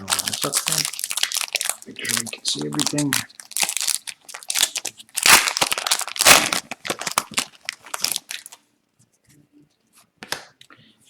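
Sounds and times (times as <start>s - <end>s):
foil wrapper crinkling: 0.0s - 8.6s
foil wrapper ripping: 0.0s - 8.6s.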